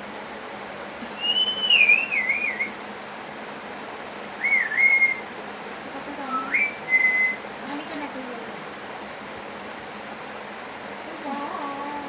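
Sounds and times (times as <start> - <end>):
parrot whistling: 1.2 - 2.8, 4.4 - 5.3, 6.3 - 7.4.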